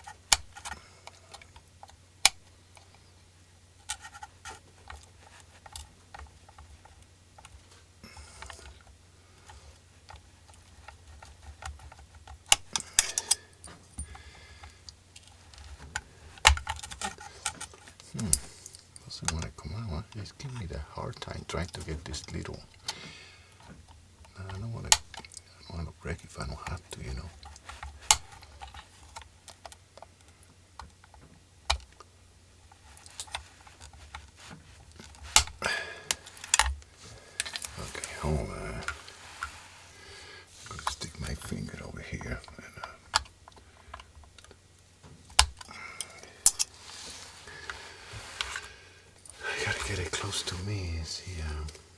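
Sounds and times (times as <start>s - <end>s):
plastic and metal parts clicking: 3.8s - 20.7s, 26.4s - 32.1s, 32.7s - 38.1s.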